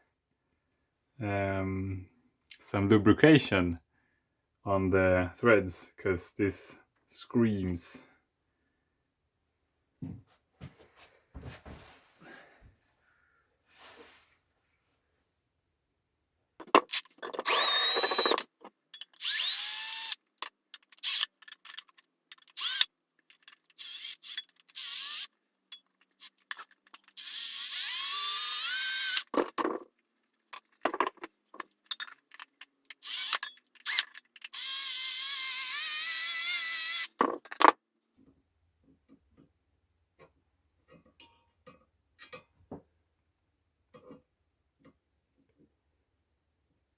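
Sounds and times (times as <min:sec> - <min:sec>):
power drill running: 0:17.4 - 0:18.5, 0:19.2 - 0:20.2, 0:21.0 - 0:21.3, 0:22.5 - 0:22.9, 0:23.8 - 0:25.3, 0:27.1 - 0:29.4, 0:33.0 - 0:37.2.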